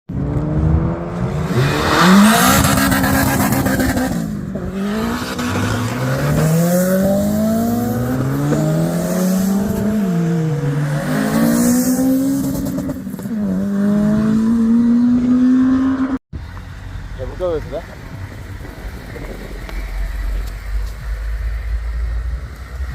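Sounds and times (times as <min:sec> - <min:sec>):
car engine revving: 0:00.1 - 0:16.2.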